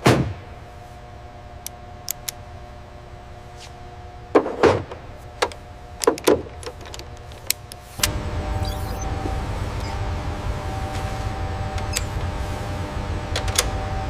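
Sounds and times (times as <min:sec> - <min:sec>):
machine hum: 0:00.0 - 0:14.0
hard parts knocking and clacking: 0:04.4 - 0:07.7
low rumble: 0:08.0 - 0:14.0.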